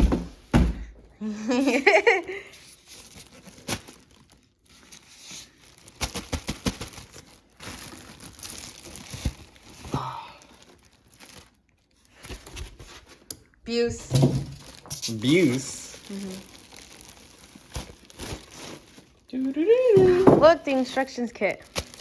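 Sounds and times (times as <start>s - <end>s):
thump: 0.0s - 0.9s
plastic wrapping crinkling: 1.6s - 22.0s.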